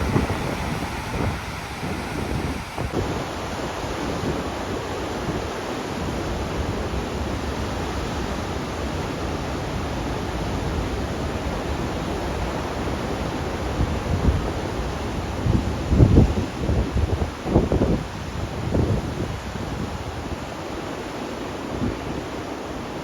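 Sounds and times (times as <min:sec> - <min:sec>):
wind buffeting microphone: 0:00.0 - 0:04.7
rushing wind: 0:00.0 - 0:20.4.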